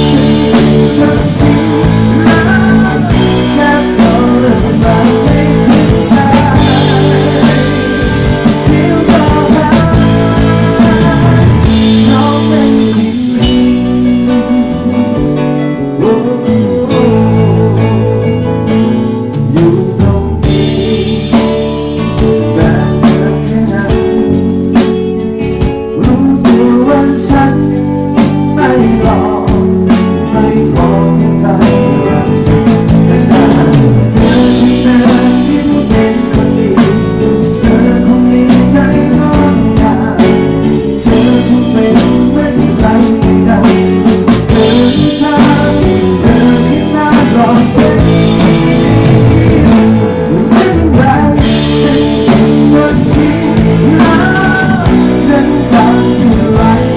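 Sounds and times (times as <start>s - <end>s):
guitar: 0.0s - 56.9s
steady drum beat: 0.0s - 56.9s.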